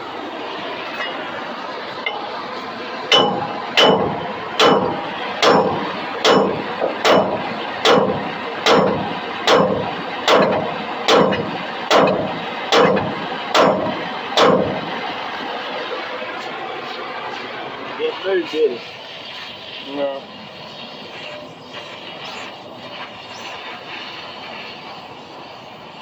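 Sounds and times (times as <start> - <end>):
steady background hum: 0.0 - 26.0
hammer blows on steel: 3.1 - 14.8.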